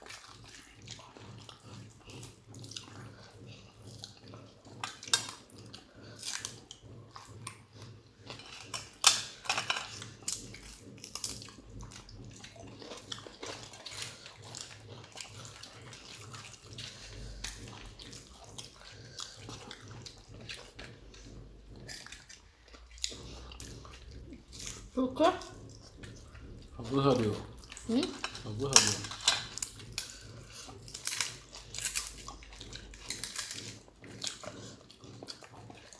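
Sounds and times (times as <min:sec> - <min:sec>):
people chewing and crunching: 0:00.0 - 0:35.9
dishes clicking and clattering: 0:08.2 - 0:11.5, 0:27.2 - 0:32.2.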